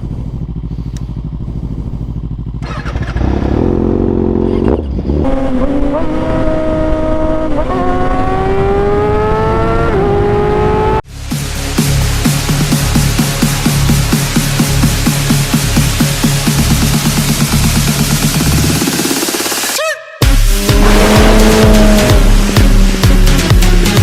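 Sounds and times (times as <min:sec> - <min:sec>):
motorcycle engine revving through gears: 0:00.0 - 0:11.0, 0:20.5 - 0:24.0.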